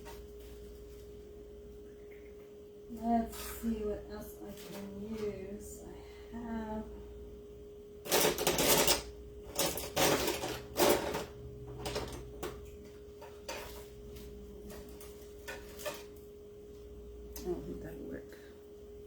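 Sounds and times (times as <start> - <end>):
faint hum: 0.0 - 19.0.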